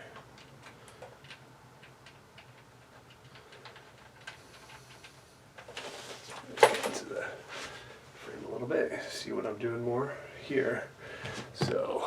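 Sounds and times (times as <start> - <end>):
handling noise: 0.4 - 7.9.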